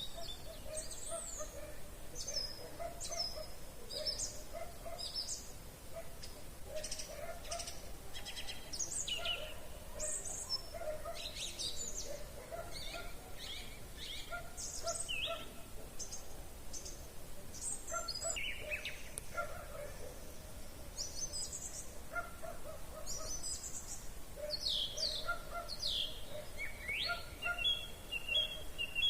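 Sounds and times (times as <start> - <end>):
songbirds chirping and trilling: 0.0 - 29.0.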